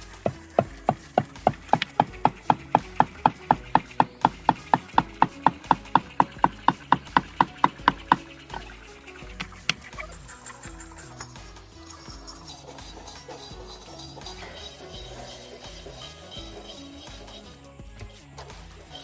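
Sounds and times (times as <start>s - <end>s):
rapid woody knocking: 0.0s - 9.9s
faint background music: 0.0s - 19.0s.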